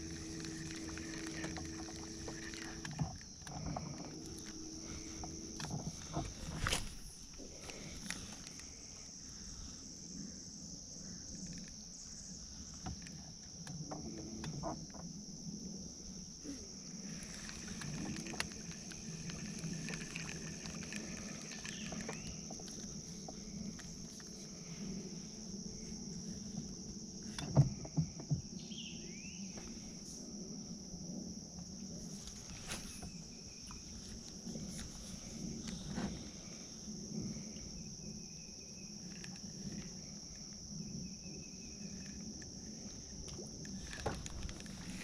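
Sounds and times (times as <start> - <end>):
small clicks: 0.0 - 7.0, 17.1 - 24.4
high-pitched insect drone: 0.0 - 45.0.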